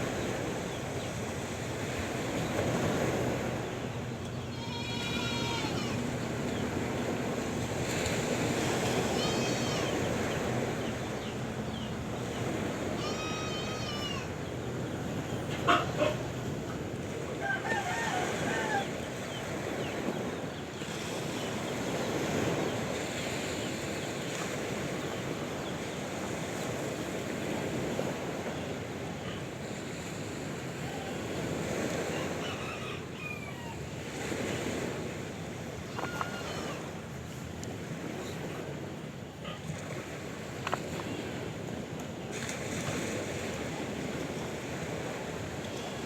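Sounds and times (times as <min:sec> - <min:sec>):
sea waves washing: 0:00.0 - 0:46.0
animal calls: 0:15.5 - 0:16.3, 0:35.9 - 0:36.9.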